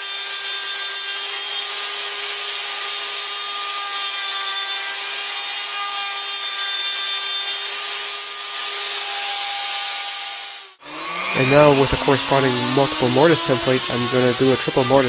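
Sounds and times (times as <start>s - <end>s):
router bit cutting wood: 0.0s - 15.0s
router whining: 0.0s - 15.0s.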